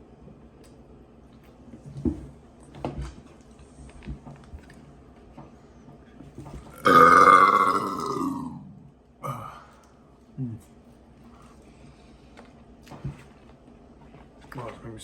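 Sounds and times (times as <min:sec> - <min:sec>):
man burping loudly: 0:06.7 - 0:09.6.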